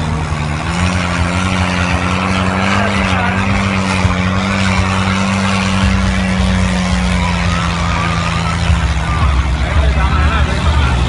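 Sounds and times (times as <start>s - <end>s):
diesel tractor engine running: 0.0s - 11.0s.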